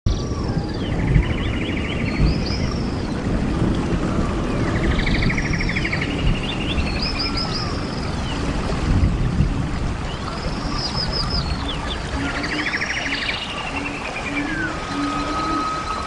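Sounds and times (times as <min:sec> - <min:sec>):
bird trills and chirps: 0:04.6 - 0:08.4, 0:10.1 - 0:16.0.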